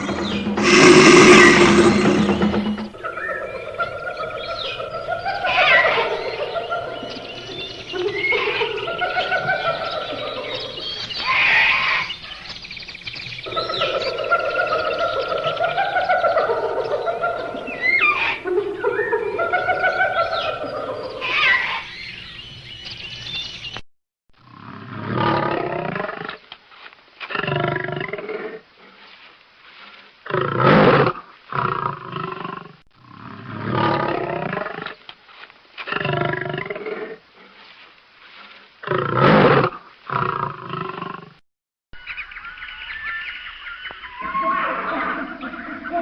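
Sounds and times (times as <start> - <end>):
big cat roars and growls: 0.0 - 2.9, 24.4 - 26.4, 30.3 - 35.0.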